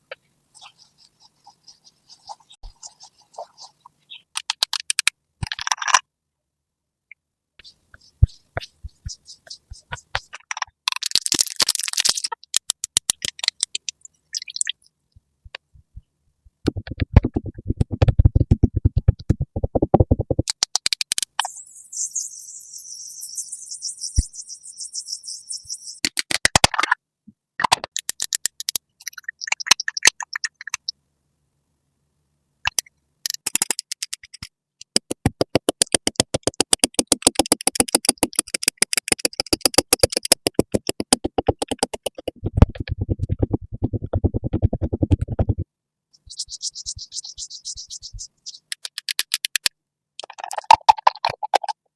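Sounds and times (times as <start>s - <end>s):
scratchy brush strokes: 0.2s - 4.1s, 39.3s - 45.6s, 46.2s - 48.6s
rapid clicking: 33.3s - 45.6s.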